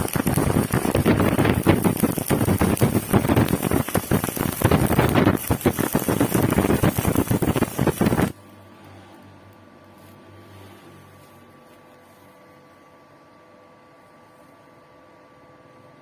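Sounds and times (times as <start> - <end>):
welding arc crackling: 0.0 - 8.6.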